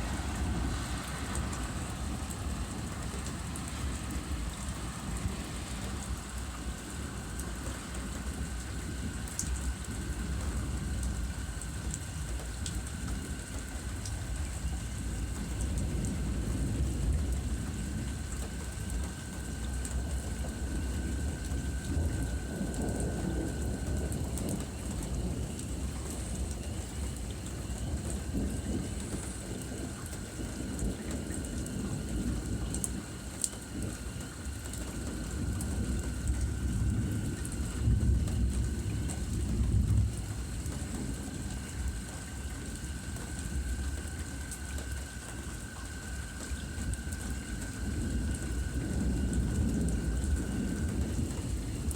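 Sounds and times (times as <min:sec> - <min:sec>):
low rumble of thunder: 0:00.0 - 0:51.9
rain falling: 0:00.0 - 0:51.9.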